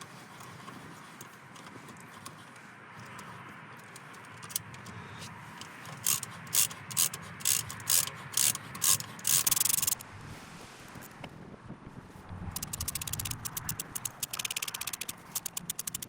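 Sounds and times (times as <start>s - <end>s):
ratcheting tap handle clicking: 5.7s - 10.0s, 12.5s - 16.0s.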